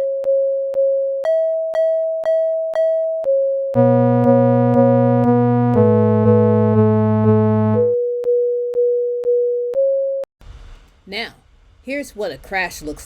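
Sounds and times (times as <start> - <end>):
buzzy synthesizer chord with bass: 3.8 - 8.0
steady pure tone: 3.8 - 8.0.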